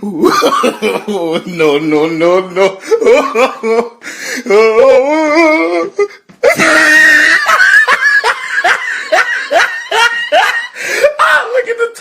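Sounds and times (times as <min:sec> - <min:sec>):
man laughing hysterically: 0:00.0 - 0:01.8, 0:02.6 - 0:11.5.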